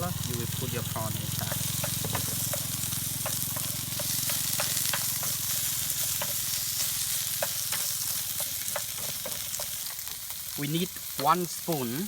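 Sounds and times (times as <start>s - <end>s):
meat and onion sizzling in pan: 0.0s - 12.0s
spatula scraping and tapping pan: 0.9s - 10.1s.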